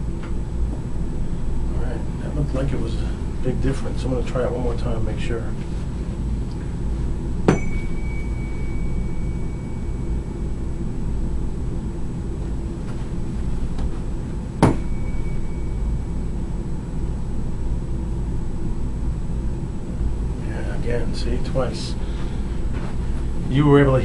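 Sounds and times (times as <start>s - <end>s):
steady low hum: 0.0s - 24.0s
tuning fork struck and ringing: 7.3s - 17.9s.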